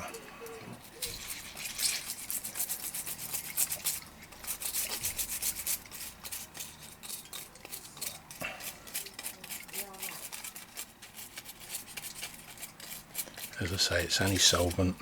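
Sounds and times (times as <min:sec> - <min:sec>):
quick scrubbing strokes: 0:01.1 - 0:14.8.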